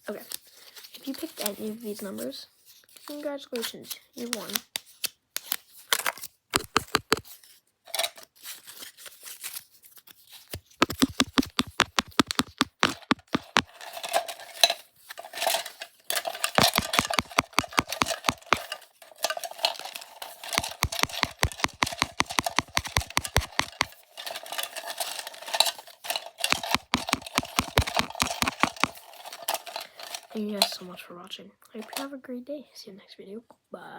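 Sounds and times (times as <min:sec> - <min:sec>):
wooden pieces clattering: 0:16.2 - 0:19.9, 0:20.5 - 0:29.8.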